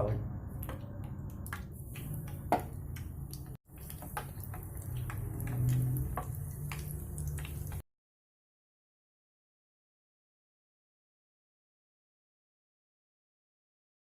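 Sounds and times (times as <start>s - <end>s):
chicken frying in hot oil: 0.6s - 7.8s.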